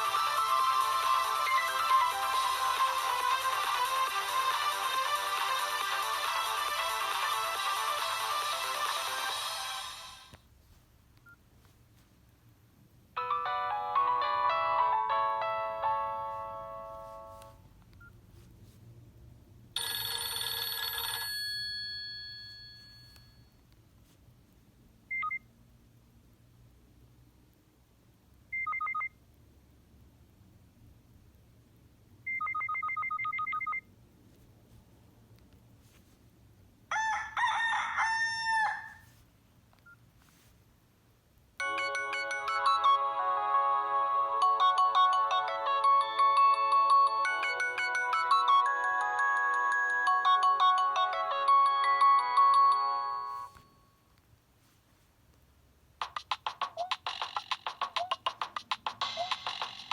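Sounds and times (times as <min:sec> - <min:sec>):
bright dense ringtone chord: 0:00.0 - 0:10.2, 0:13.2 - 0:17.5, 0:41.6 - 0:53.9
phone ringtone bell-like melody: 0:00.0 - 0:10.3, 0:13.2 - 0:17.6, 0:19.8 - 0:23.6, 0:41.6 - 0:54.0, 0:59.0 - 0:59.9
rooster crow ringtone: 0:36.9 - 0:39.1.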